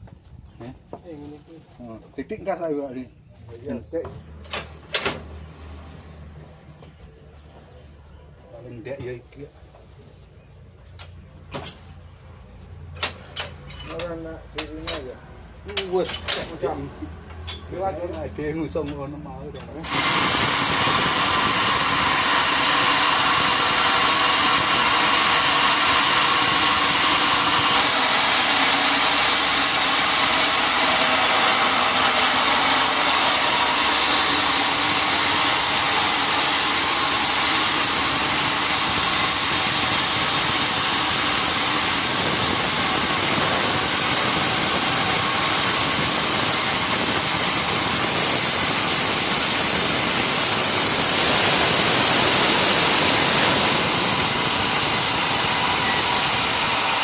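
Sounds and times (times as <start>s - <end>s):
sawmill machinery running: 19.6s - 57.0s.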